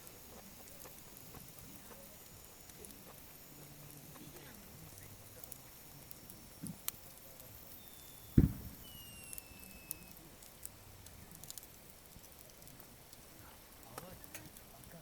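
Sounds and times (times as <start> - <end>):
campfire crackling: 0.0 - 15.0
small fire pops: 0.0 - 15.0
dull low thump: 8.4 - 8.8.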